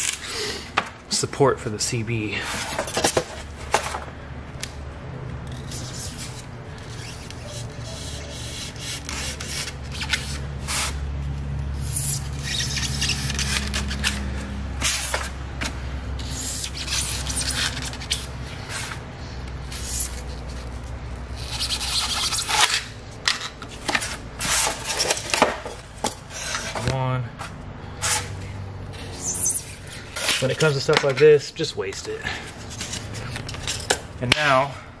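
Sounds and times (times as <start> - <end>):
knife cutting and scraping foam: 5.5 - 11.0, 11.8 - 15.3, 16.2 - 19.0, 19.6 - 22.9, 23.8 - 25.5, 29.0 - 31.1.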